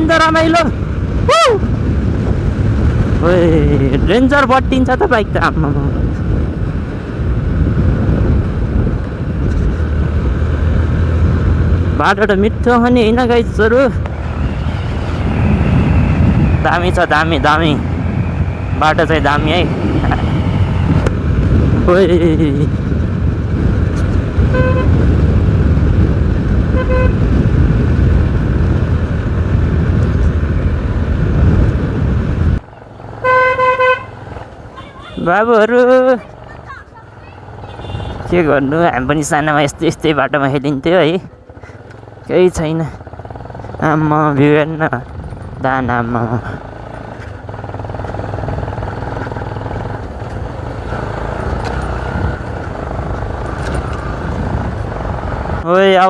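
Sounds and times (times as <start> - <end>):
motorbike engine rumble: 0.0 - 55.8
road noise: 0.0 - 56.0
long horn honk: 24.5 - 25.0, 26.7 - 27.3, 33.2 - 34.2, 37.7 - 38.3
horn beep: 33.2 - 34.2.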